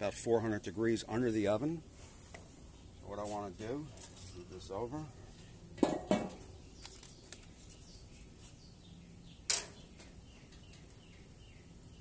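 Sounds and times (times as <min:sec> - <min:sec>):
cookware clanking on metal griddle: 0:05.8 - 0:06.4.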